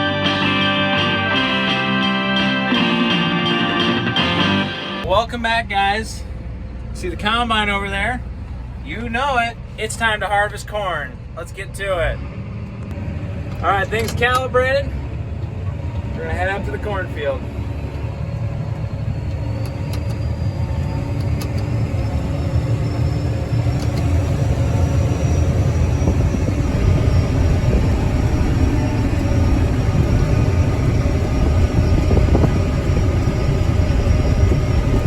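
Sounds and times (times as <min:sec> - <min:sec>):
high whine rising in pitch: 0:00.0 - 0:05.2, 0:16.4 - 0:35.0
combine harvester engine rumble: 0:12.6 - 0:35.0.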